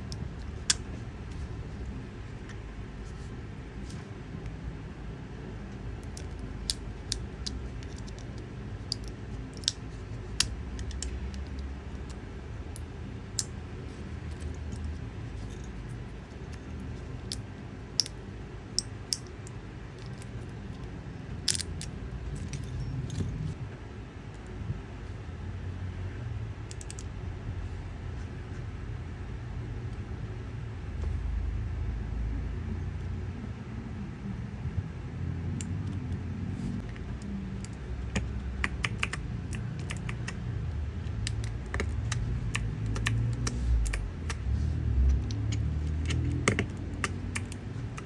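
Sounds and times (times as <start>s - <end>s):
steady low hum: 0.0s - 48.0s
keycap clicking: 37.0s - 40.4s.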